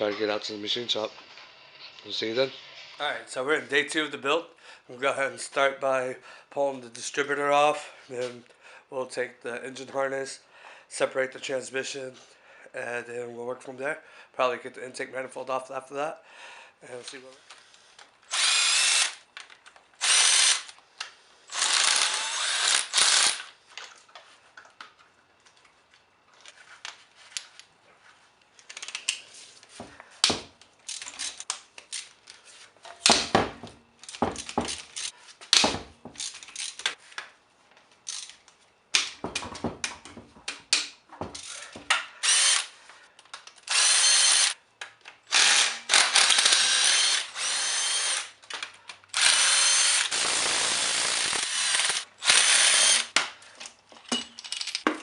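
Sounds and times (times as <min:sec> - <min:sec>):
power tool motor whining: 0:43.7 - 0:44.6, 0:45.3 - 0:48.3, 0:49.2 - 0:53.1.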